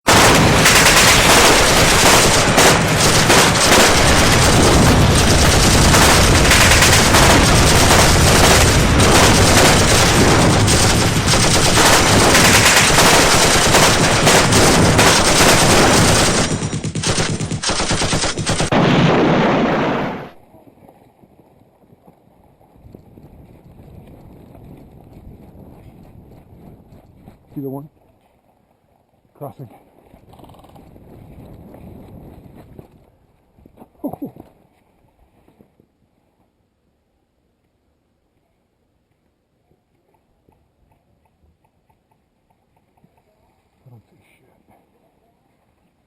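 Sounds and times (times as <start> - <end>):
rapid automatic gunfire: 0.1 - 20.4.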